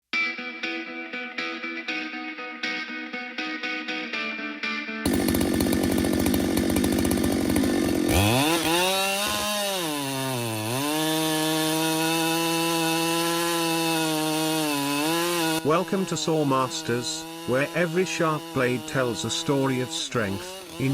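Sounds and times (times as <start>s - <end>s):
guitar music: 0.1s - 5.2s
chainsaw revving: 5.0s - 20.9s.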